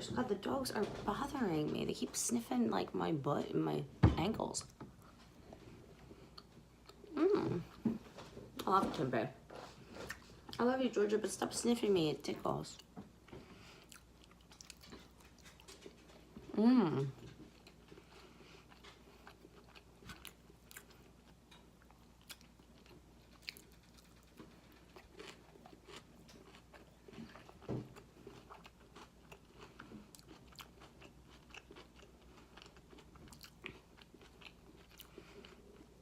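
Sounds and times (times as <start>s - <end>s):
person chewing and crunching: 13.7s - 16.2s, 17.1s - 36.0s.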